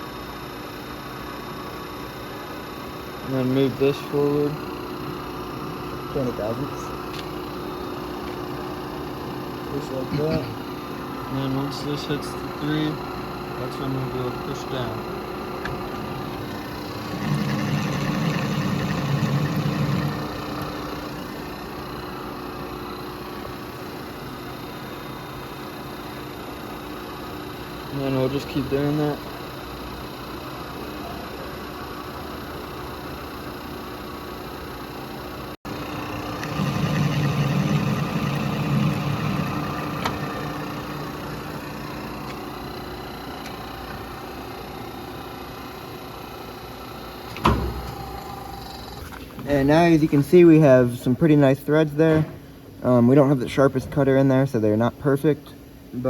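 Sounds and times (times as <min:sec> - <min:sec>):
lathe running: 0:03.4 - 0:22.4, 0:35.7 - 0:45.5.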